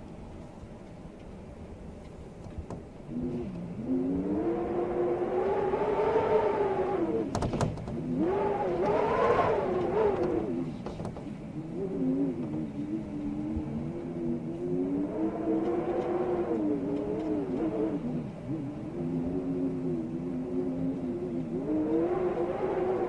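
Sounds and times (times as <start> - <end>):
wind howling in gusts: 0.0 - 23.0.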